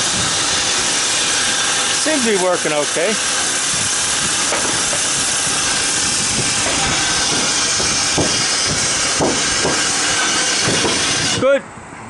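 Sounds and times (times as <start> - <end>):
compressor lift rushing hiss: 0.0 - 11.6.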